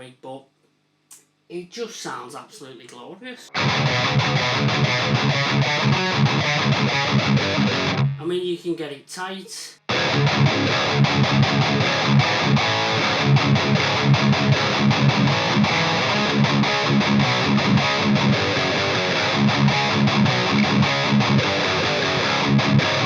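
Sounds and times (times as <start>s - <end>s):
distorted electric guitar riffing: 3.5s - 8.2s, 9.8s - 23.0s.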